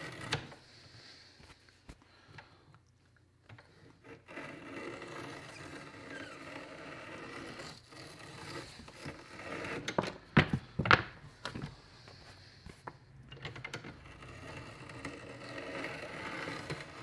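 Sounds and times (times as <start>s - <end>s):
steady scraping: 3.5s - 17.0s.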